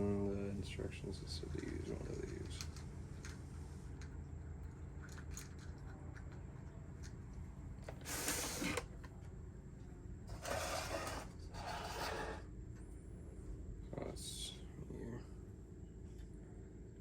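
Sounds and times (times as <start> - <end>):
steady low hum: 0.0 - 17.0
rasping scraping on plastic: 10.3 - 12.4.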